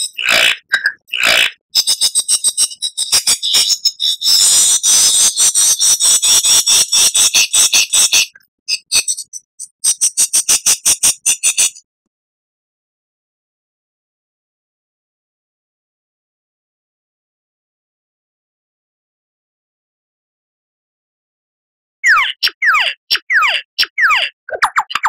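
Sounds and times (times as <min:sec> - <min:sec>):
lyrebird clicking calls: 0:00.1 - 0:01.6, 0:22.0 - 0:25.0.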